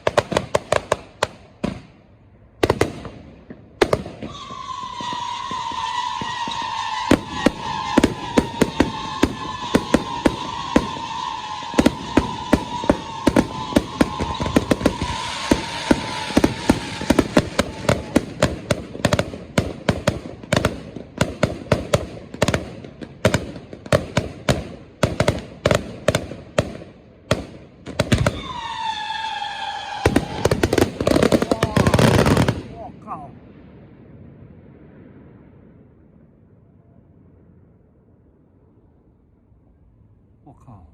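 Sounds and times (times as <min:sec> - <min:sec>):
fireworks cracking and banging: 0:00.0 - 0:02.0, 0:02.6 - 0:35.6
falling firework whistle: 0:04.1 - 0:18.6, 0:28.1 - 0:32.6.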